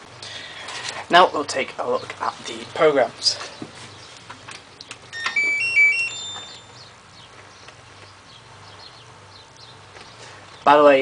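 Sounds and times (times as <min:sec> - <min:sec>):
electronic beep chime: 0:05.1 - 0:06.8.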